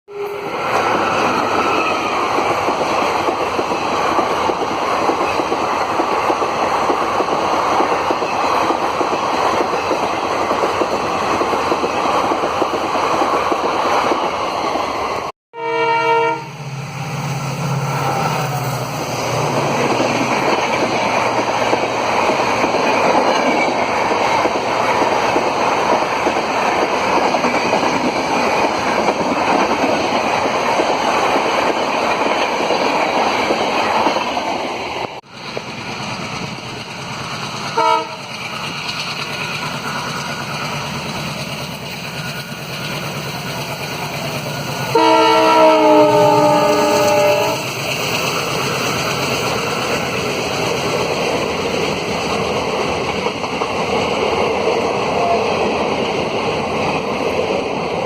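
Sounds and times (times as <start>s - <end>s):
train wheels rumbling on rails: 0.1s - 15.3s, 16.3s - 58.0s
locomotive horn blast: 15.6s - 16.7s, 37.8s - 38.3s, 44.9s - 47.7s.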